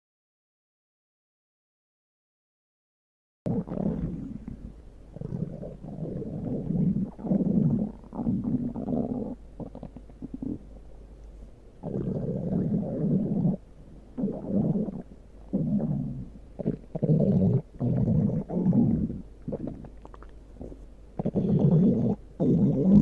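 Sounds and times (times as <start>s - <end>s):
stomach growling: 3.5s - 10.7s, 11.8s - 13.6s, 14.2s - 23.0s.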